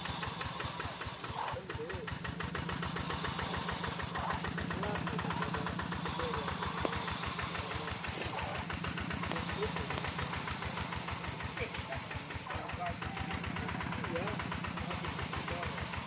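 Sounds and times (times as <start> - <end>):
diesel engine chugging: 0.0 - 16.0
short hiss: 8.1 - 8.5.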